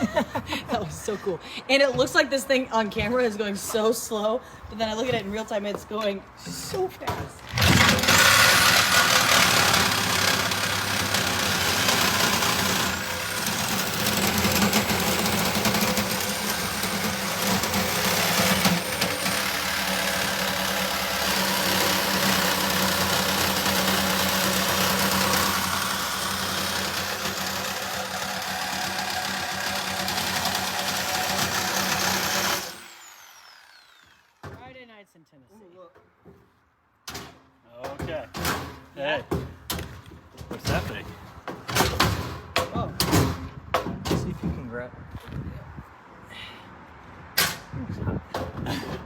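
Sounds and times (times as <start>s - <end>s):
power tool grinding metal: 7.4s - 34.4s.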